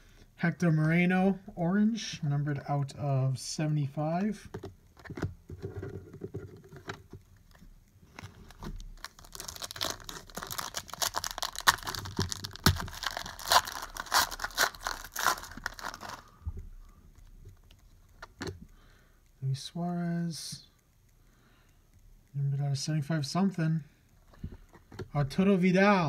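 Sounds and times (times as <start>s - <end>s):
card pack wrapper crinkling: 6.7s - 16.5s.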